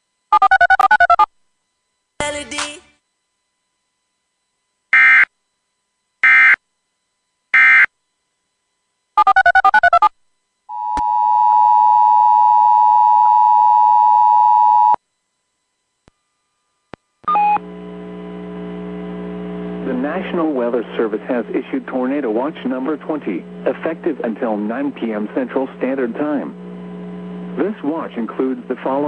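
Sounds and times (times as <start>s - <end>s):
data tone bursts: 0.3s - 1.3s, 9.2s - 10.1s, 10.7s - 15.0s
steady attention tone: 3.0s - 29.0s.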